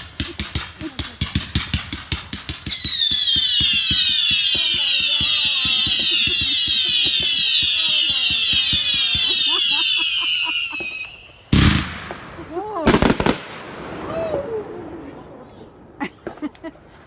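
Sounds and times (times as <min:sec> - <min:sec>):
firework pops: 0:00.0 - 0:09.6
shrill firework whistles: 0:02.7 - 0:11.8.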